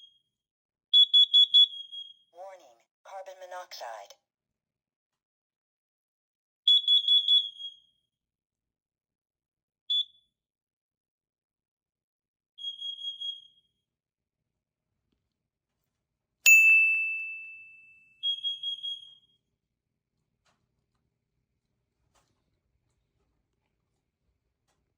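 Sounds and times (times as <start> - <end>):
sharp ringing ding: 16.5 - 18.2.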